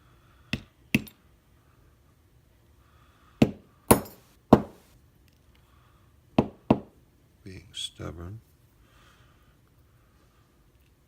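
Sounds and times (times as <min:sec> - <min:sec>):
metallic knocks on lock: 0:03.9 - 0:04.8.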